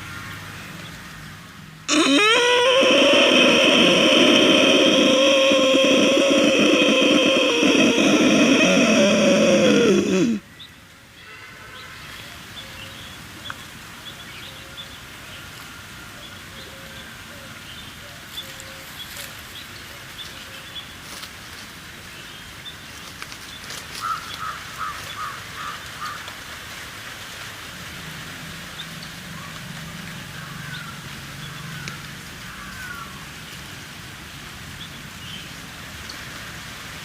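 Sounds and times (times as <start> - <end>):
crow cawing: 1.9 - 10.4, 31.8 - 33.2
steady hiss: 1.9 - 10.5
birds chirping: 1.9 - 10.8.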